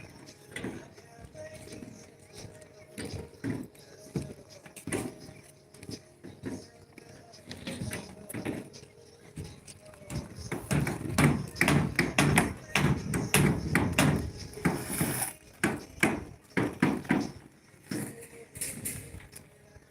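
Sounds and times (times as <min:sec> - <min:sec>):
hammering on timber: 0:10.1 - 0:18.1.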